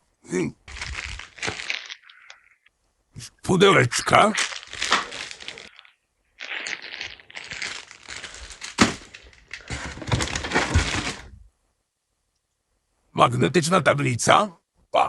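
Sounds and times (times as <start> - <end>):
packaging crinkling and rustling: 0.7 - 2.6, 4.0 - 11.4.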